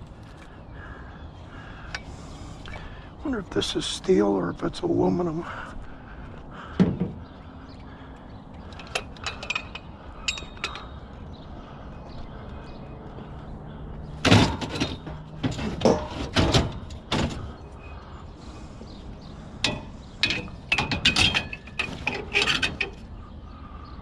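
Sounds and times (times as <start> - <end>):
scrap metal clanking: 14.2 - 23.2.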